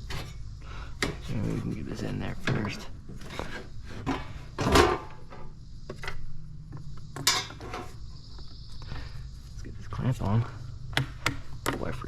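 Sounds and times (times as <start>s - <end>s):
pipe parts knocking and scraping: 0.0s - 8.0s.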